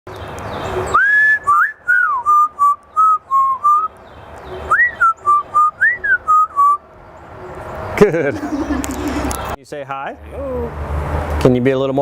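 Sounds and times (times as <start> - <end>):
parrot whistling a tune: 4.7 - 6.8.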